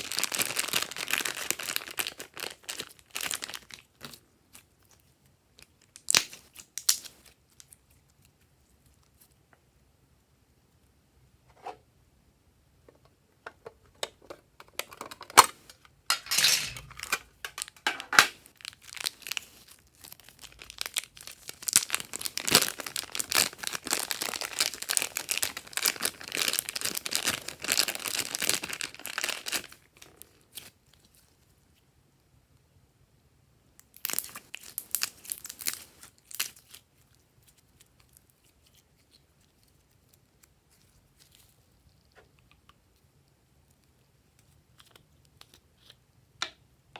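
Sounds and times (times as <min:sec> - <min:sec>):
sticky slime popping and crackling: 0:17.5 - 0:30.7, 0:33.9 - 0:36.8.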